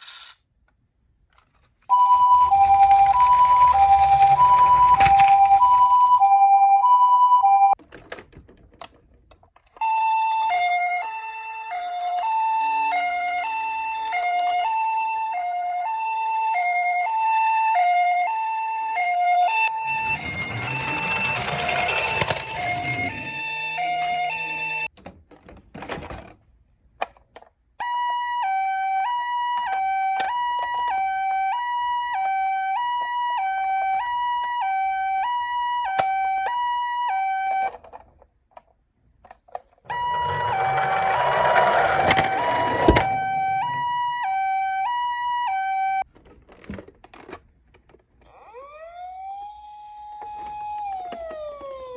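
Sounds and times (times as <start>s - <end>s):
toy ambulance two-tone siren: 1.9s - 7.8s, 9.7s - 24.9s, 27.8s - 37.9s, 39.9s - 46.1s, 48.2s - 51.9s.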